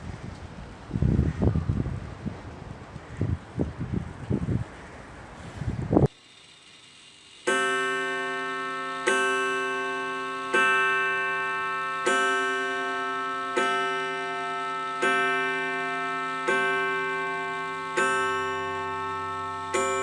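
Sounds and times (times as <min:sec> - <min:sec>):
clock striking on gong: 0:07.4 - 0:20.0.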